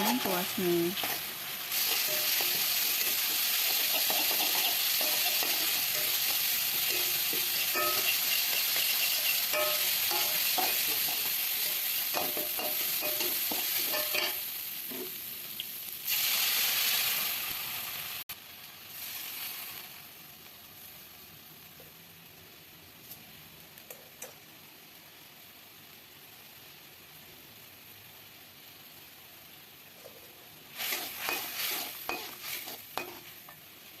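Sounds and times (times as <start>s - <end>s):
spice paste sizzling in a pan: 0.0s - 34.0s
spatula clinking against pan: 1.9s - 11.3s, 12.1s - 14.4s, 32.1s - 32.4s, 33.0s - 33.2s.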